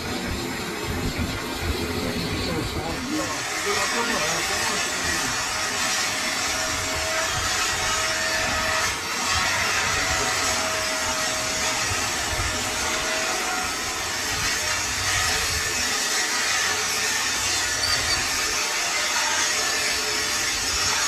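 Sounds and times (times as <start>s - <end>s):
faint wavering whine: 16.9s - 18.8s.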